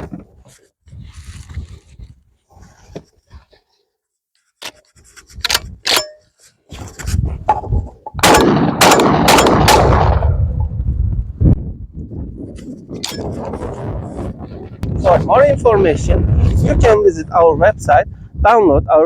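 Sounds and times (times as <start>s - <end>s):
shotgun shots: 8.2s - 10.4s.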